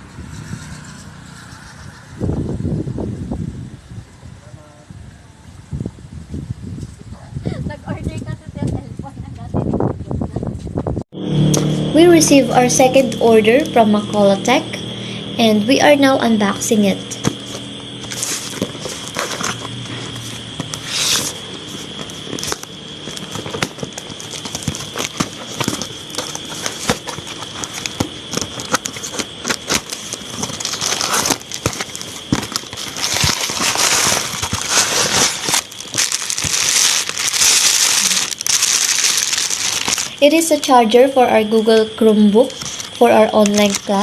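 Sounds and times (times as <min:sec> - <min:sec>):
packaging crinkling: 0:17.1 - 0:40.2, 0:42.5 - 0:44.0.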